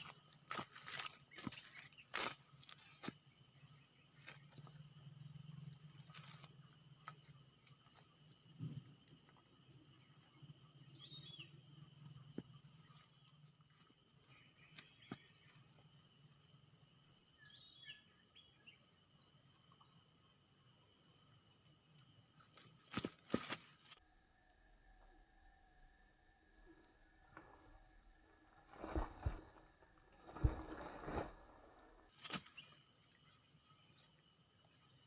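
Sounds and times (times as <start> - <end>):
high insect drone: 0.0 - 29.0, 32.1 - 35.0
falling bird chirps: 32.2 - 34.1.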